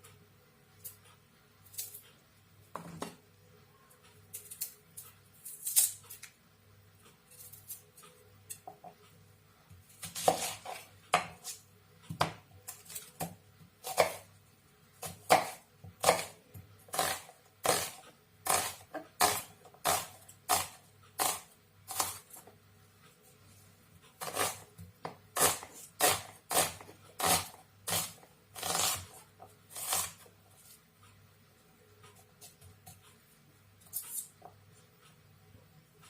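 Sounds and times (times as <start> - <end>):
knife chopping on cutting board: 10.0 - 12.4, 13.2 - 14.2, 15.0 - 22.2, 24.2 - 29.1.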